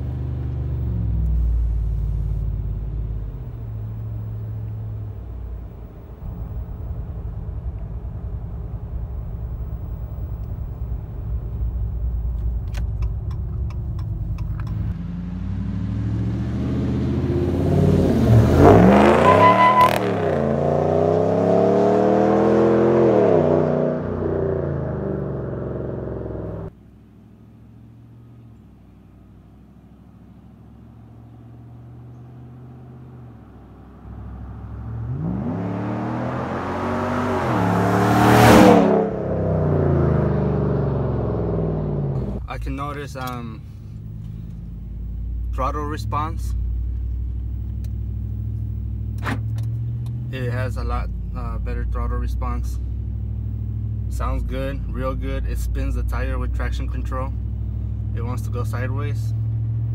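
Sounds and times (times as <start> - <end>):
truck engine rumbling and revving: 0.0 - 59.9.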